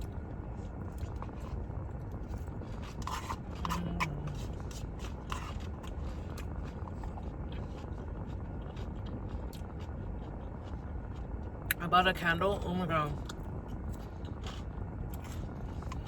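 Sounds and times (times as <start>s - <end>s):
crunchy bites and chewing: 0.0s - 11.8s, 13.1s - 16.0s
steady low rumble: 0.0s - 16.0s
utensil scraping food container: 2.3s - 6.2s.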